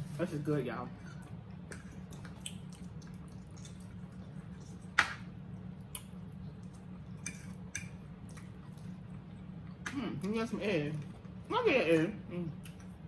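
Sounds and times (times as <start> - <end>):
wet eating smacks and clicks: 1.7 - 9.0.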